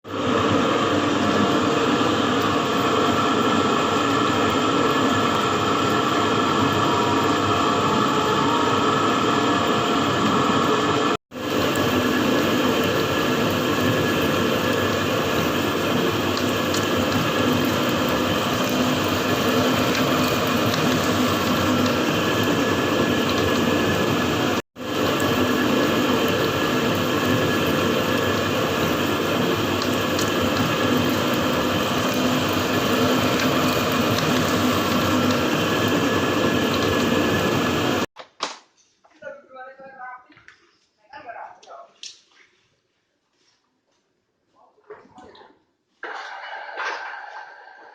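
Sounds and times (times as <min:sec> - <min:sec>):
machine mechanical drone: 0:02.0 - 0:38.1.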